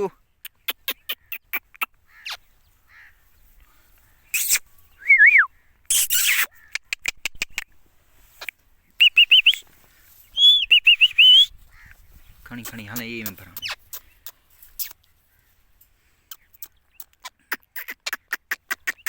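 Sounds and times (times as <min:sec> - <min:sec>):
parakeet screeching and whistling: 0:04.3 - 0:06.5, 0:10.4 - 0:11.5
high chirping notes: 0:10.3 - 0:11.6.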